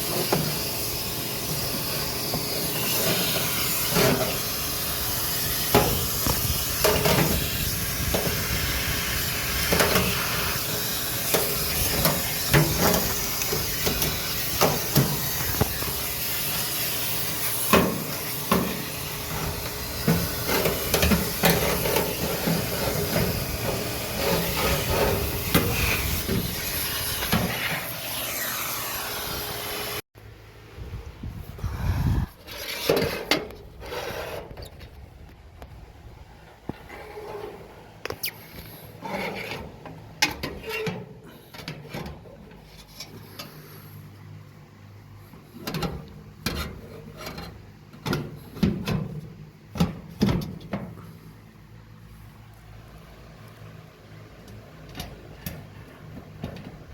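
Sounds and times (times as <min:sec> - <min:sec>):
vacuum hose rushing hiss: 0:00.0 - 0:30.0.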